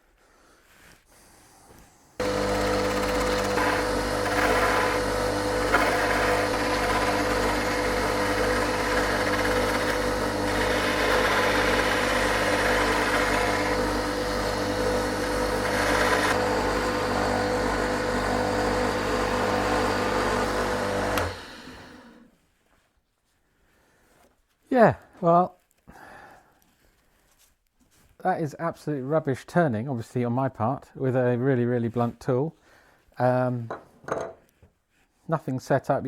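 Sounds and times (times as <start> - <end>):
lathe motor humming and whining: 2.2 - 22.3.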